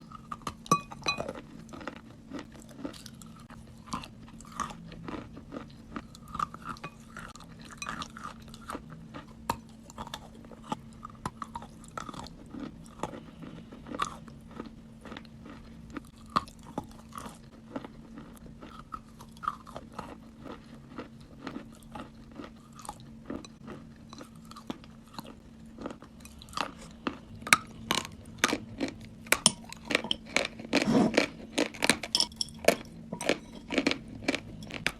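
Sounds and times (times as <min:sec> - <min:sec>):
chewing crunchy food: 0:00.0 - 0:34.9
faint steady hum: 0:00.0 - 0:34.9.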